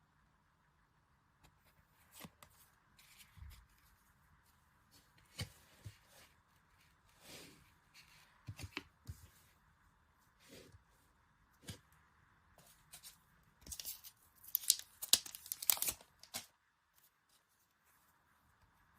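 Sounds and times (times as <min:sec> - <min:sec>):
packaging rustling: 0:13.7 - 0:16.5.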